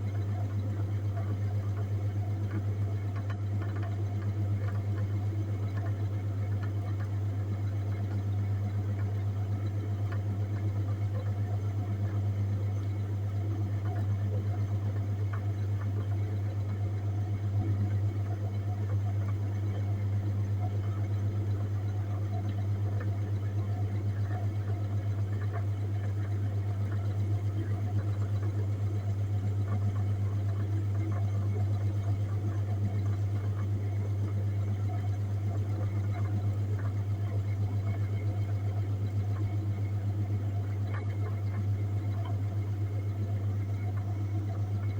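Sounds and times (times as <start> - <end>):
compressor humming: 18.9 - 44.9.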